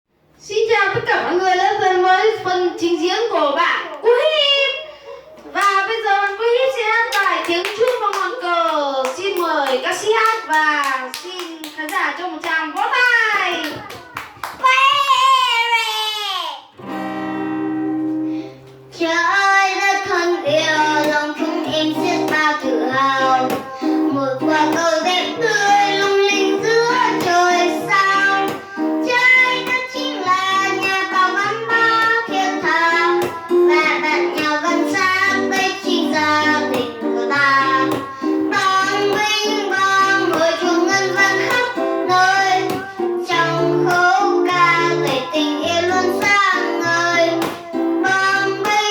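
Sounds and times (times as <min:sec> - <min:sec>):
child singing: 0:13.4 - 0:16.6, 0:18.9 - 0:48.9
guitar backing track with bass: 0:16.8 - 0:48.9.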